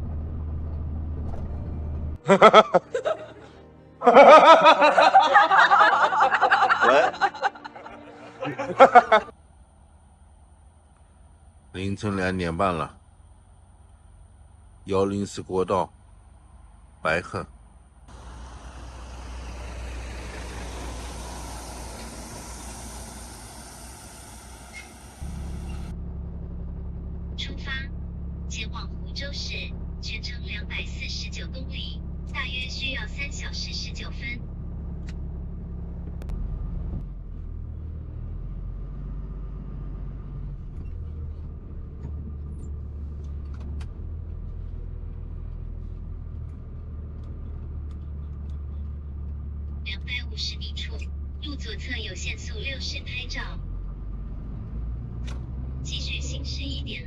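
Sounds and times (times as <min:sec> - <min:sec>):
truck engine rumble: 0:00.0 - 0:57.0
music: 0:01.6 - 0:05.4, 0:06.2 - 0:09.2
comic giggling sound effect: 0:02.2 - 0:09.3.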